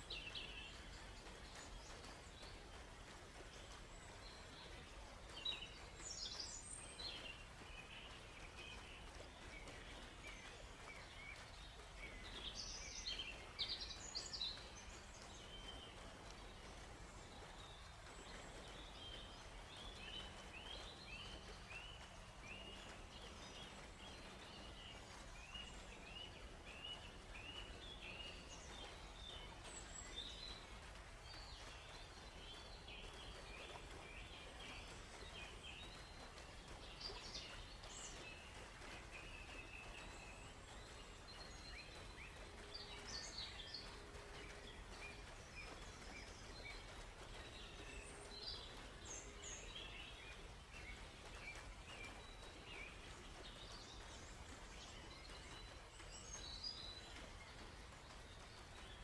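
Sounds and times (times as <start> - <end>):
faint background hiss: 0.0 - 59.0.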